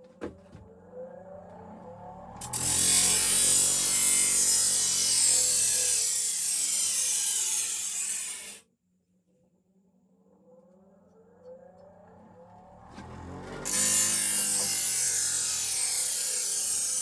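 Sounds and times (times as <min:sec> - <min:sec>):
blade grinding on power grinder: 0:02.4 - 0:08.6, 0:13.0 - 0:17.0.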